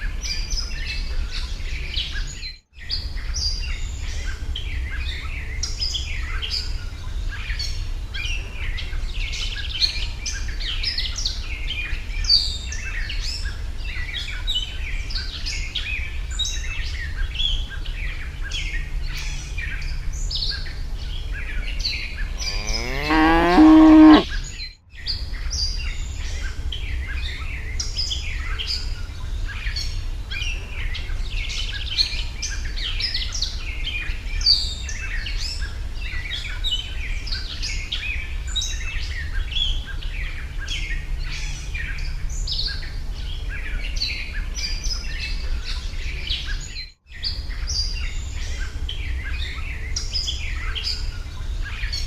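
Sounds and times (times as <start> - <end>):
steady low hum: 3.9 - 24.5
birds chirping: 19.1 - 24.5
cow mooing: 22.2 - 24.4.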